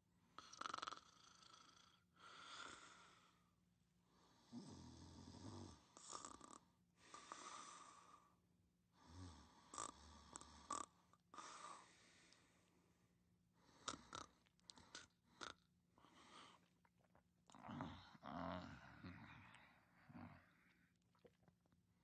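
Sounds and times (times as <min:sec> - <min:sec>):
low snore: 0:00.4 - 0:02.0, 0:04.3 - 0:06.6, 0:09.0 - 0:11.9, 0:17.5 - 0:20.7
breathy inhales and exhales: 0:13.6 - 0:16.8.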